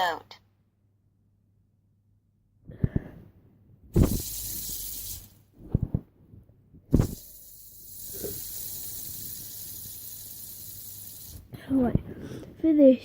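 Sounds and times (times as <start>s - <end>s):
speaker static hiss: 3.9s - 5.9s, 6.9s - 11.5s.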